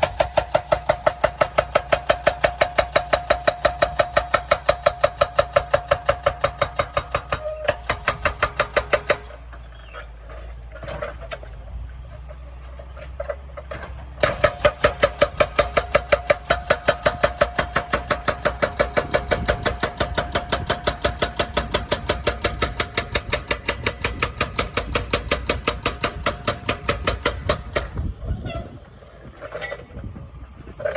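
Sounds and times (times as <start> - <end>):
hydraulic breaker hammering: 0.0 - 9.4, 13.8 - 28.2
excavator engine running: 0.0 - 30.9.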